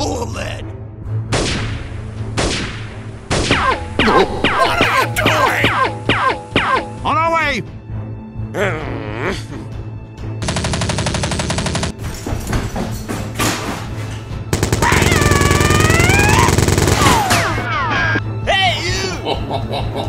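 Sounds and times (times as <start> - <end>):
background music: 0.0 - 20.0
automatic machine-gun fire: 10.4 - 11.9, 14.5 - 17.6.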